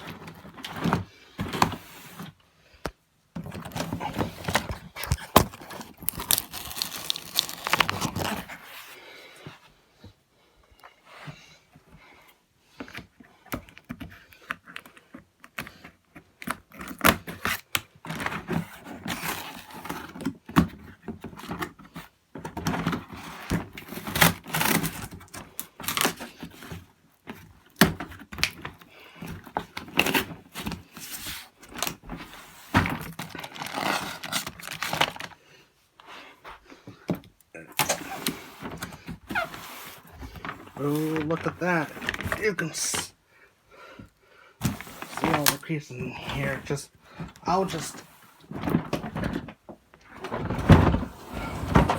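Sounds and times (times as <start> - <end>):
packaging rustling: 3.4 - 8.9, 23.0 - 35.4, 37.7 - 43.1, 44.6 - 51.9.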